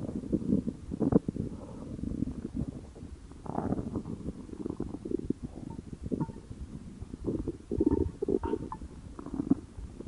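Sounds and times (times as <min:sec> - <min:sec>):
stomach growling: 0:00.0 - 0:10.0.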